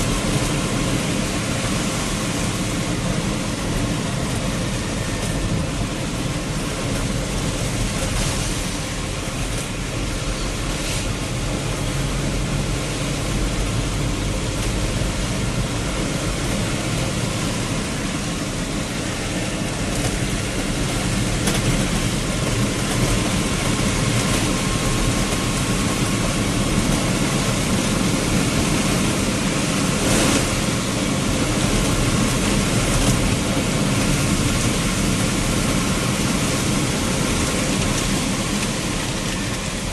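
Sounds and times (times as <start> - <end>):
heavy rain and road noise: 0.0 - 39.9
vehicle engine running: 0.0 - 39.9.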